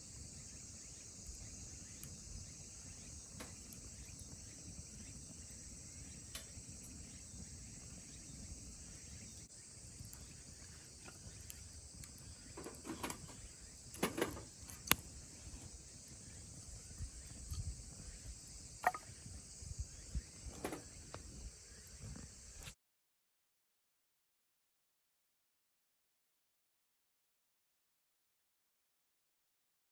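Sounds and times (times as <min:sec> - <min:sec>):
insects chirring: 0:00.0 - 0:22.8.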